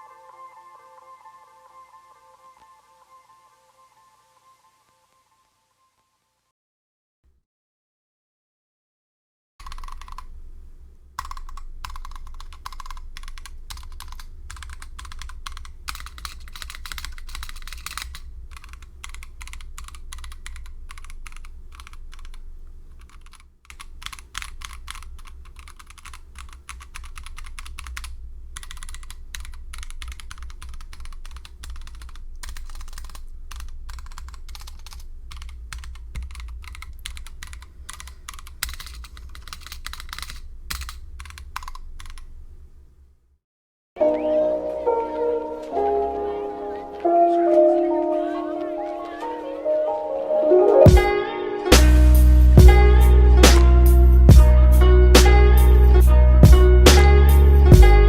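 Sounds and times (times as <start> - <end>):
mechanical keyboard typing: 9.6 - 42.8.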